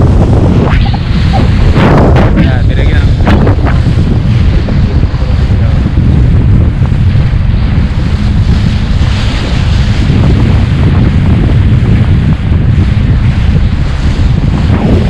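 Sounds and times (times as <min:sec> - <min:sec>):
strong wind buffeting microphone: 0:00.0 - 0:15.0.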